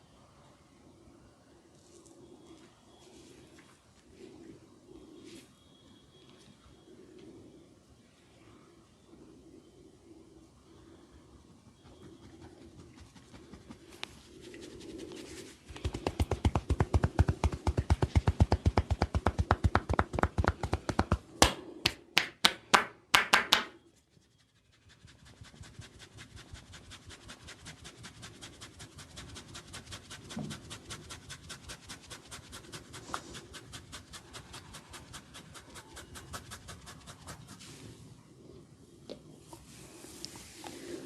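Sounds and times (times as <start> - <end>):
hands tapping on head: 15.7 - 23.7
sharp hand slaps: 16.0 - 23.7.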